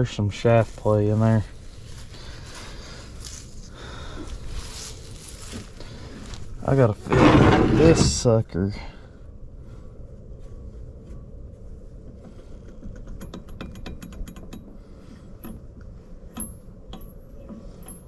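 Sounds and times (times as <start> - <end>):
turbocharger shaft metallic clicking: 15.4 - 18.0.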